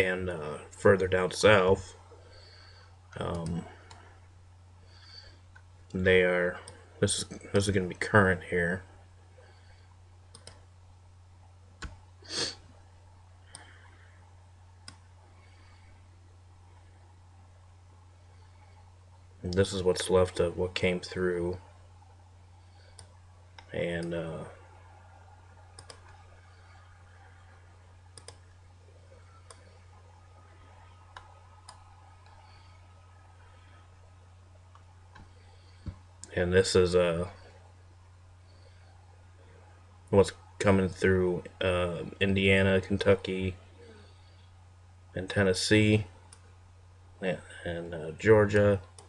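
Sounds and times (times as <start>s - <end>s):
low electrical hum: 0.0s - 49.0s
computer mouse clicks: 10.3s - 10.6s, 14.8s - 15.0s, 22.9s - 23.7s, 25.7s - 26.2s, 28.1s - 28.5s, 31.1s - 32.8s.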